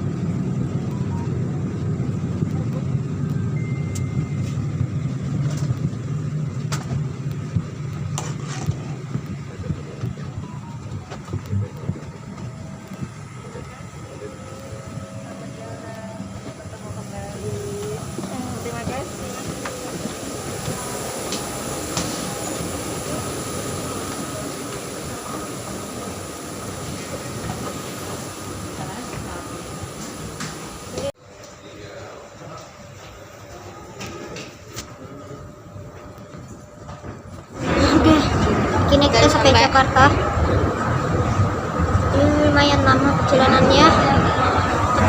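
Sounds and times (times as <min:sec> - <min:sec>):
faint steady whine: 0:00.0 - 0:32.5.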